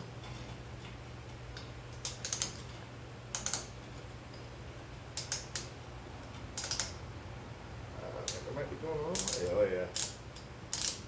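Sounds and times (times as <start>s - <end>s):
ratcheting tool clicking: 2.0s - 2.6s, 3.3s - 3.7s, 5.2s - 5.7s, 6.6s - 7.0s, 9.2s - 11.0s.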